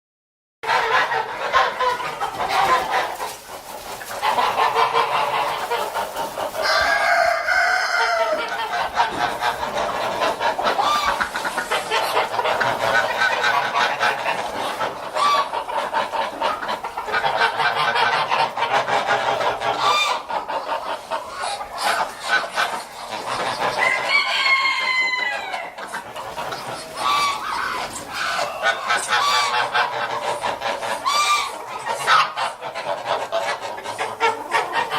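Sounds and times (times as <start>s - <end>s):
flock of fowl calling: 0.6s - 34.9s.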